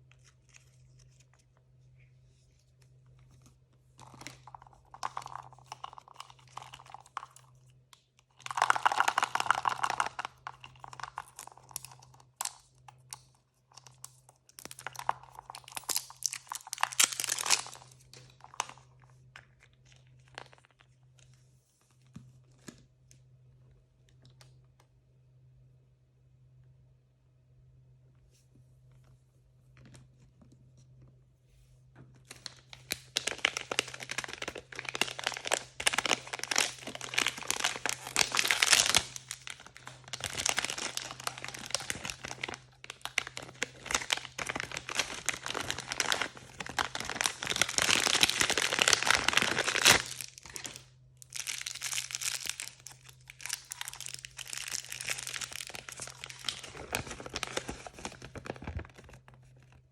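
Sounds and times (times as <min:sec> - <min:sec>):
packaging crinkling and tearing: 0:00.0 - 0:01.6, 0:03.4 - 0:07.5, 0:08.3 - 0:20.9, 0:32.2 - 0:59.9
faint low hum: 0:00.0 - 0:59.9.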